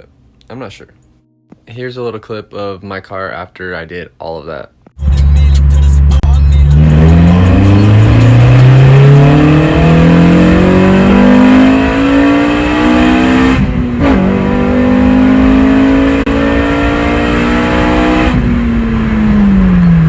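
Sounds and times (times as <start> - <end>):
car engine accelerating hard: 5.0 - 20.0.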